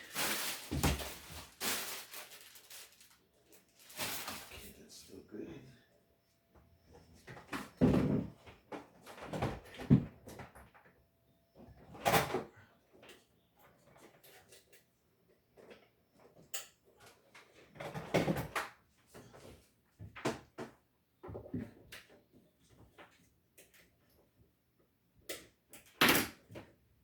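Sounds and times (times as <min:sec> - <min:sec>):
objects knocking and clattering: 0:00.1 - 0:02.8
cupboard door opening and closing: 0:00.6 - 0:01.4.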